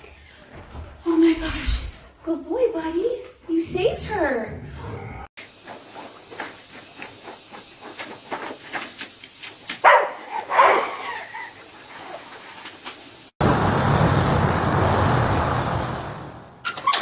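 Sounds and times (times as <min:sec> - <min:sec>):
steady rushing noise: 0:13.4 - 0:16.6.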